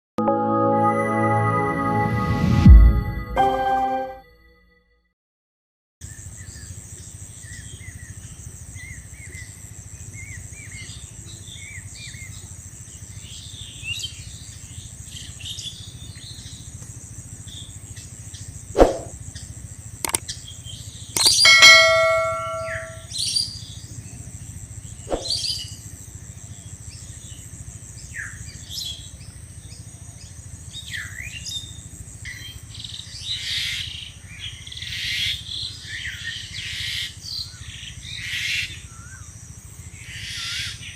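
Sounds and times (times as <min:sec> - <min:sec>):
sharp clicks: 0:21.2 - 0:21.6
birds chirping: 0:21.2 - 0:23.0
bell-like ring: 0:21.2 - 0:23.1.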